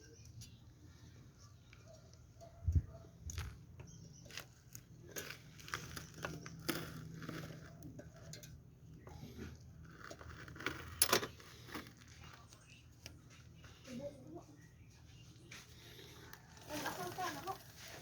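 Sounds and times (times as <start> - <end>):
hands working on metal parts: 1.7 - 13.9.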